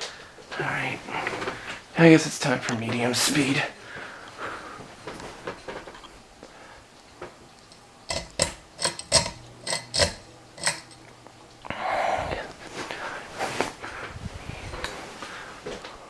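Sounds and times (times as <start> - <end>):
fan speed control clicks: 7.6 - 11.4.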